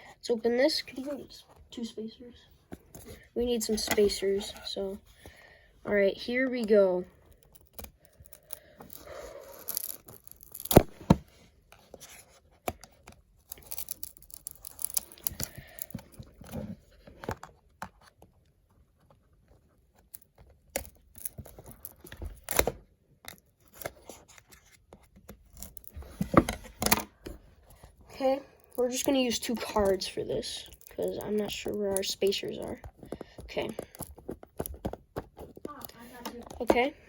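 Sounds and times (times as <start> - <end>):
plastic packaging tearing and crinkling: 7.3 - 11.2, 13.4 - 16.5, 20.1 - 26.1
clicks and knocks of plastic box: 32.8 - 37.0.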